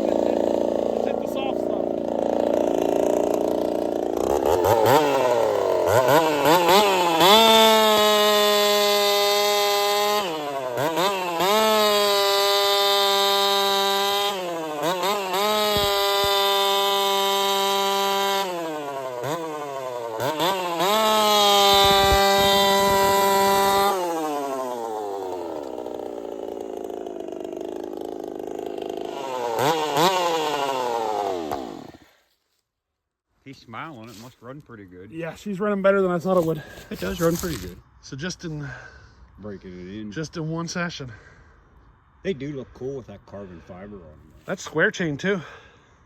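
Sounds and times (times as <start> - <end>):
chainsaw revving and cutting wood: 0.0 - 32.4, 36.0 - 37.8.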